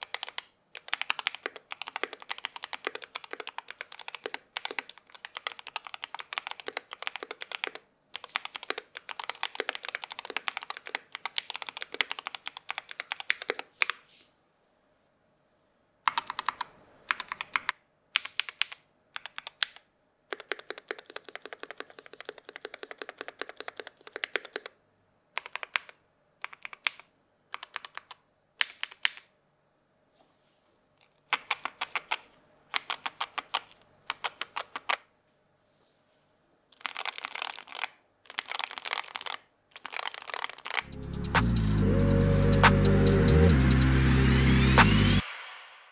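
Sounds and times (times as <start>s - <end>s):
keyboard typing clacks: 0.0s - 13.7s.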